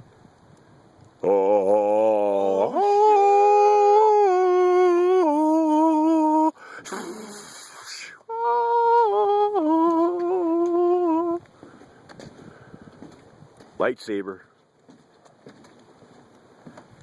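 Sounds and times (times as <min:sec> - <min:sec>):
man humming: 0:01.2 - 0:11.4
short hiss: 0:06.6 - 0:08.2.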